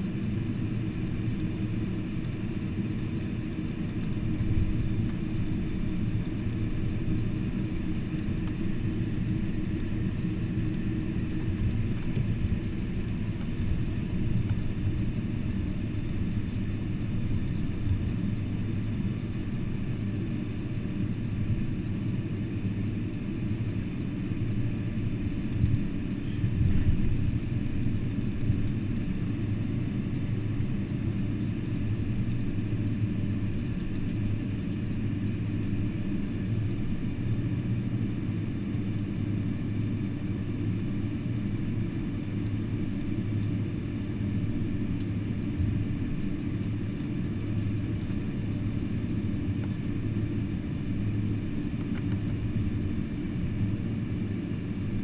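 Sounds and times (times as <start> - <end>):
aircraft cabin rumble and engine hum: 0.0 - 55.0.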